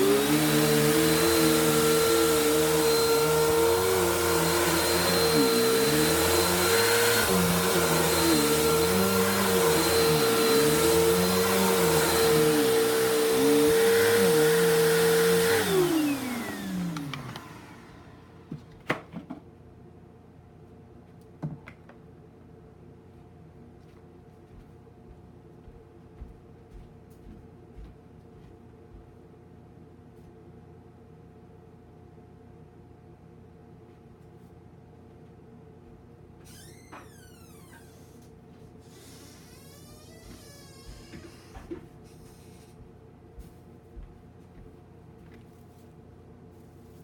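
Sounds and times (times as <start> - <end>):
vacuum cleaner motor whine: 0.0 - 18.6, 36.5 - 42.8.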